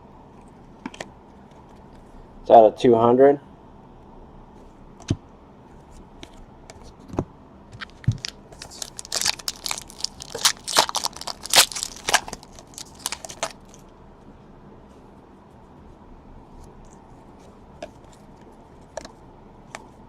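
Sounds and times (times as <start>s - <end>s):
card pack wrapper tearing: 7.8s - 13.8s.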